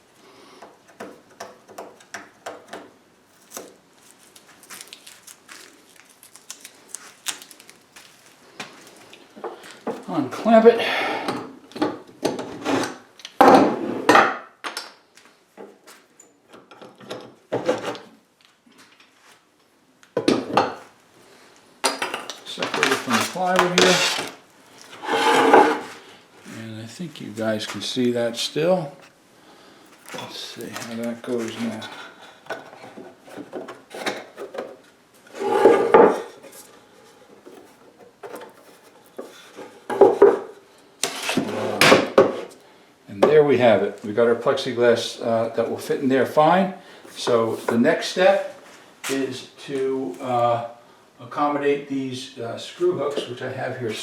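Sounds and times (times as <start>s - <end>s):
plexiglass scraping against wood: 22.6s - 26.0s, 35.3s - 36.6s.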